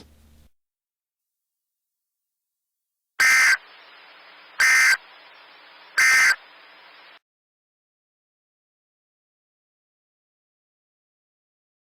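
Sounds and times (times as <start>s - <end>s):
faint hiss: 3.2s - 7.2s.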